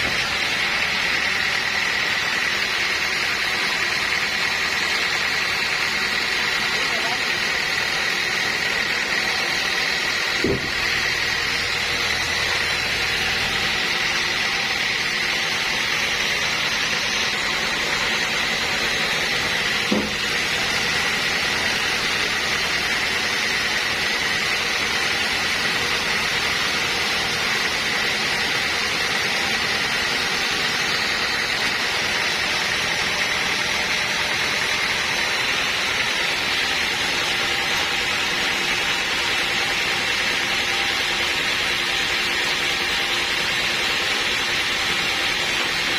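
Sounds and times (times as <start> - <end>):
sawmill machinery whining: 0.0 - 45.9
brief bump: 10.4 - 10.7, 19.9 - 20.2.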